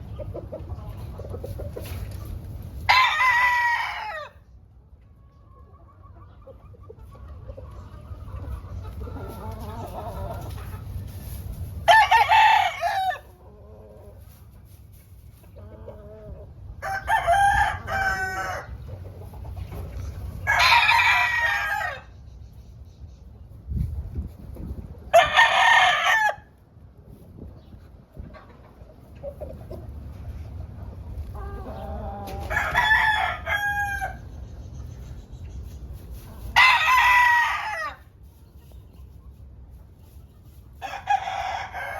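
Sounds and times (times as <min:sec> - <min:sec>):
chickens clucking: 0:00.0 - 0:02.9, 0:04.2 - 0:12.2, 0:12.8 - 0:25.4, 0:26.5 - 0:41.9
roosters crowing: 0:02.8 - 0:04.5, 0:11.8 - 0:14.2, 0:16.0 - 0:19.0, 0:20.2 - 0:22.2, 0:25.1 - 0:26.6, 0:31.3 - 0:34.4, 0:36.4 - 0:38.2, 0:40.7 - 0:41.9.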